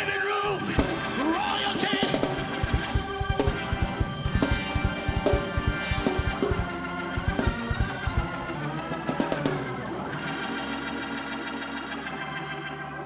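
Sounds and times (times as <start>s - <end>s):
organ chords: 0.0s - 13.0s
fast driving drums: 0.8s - 10.2s.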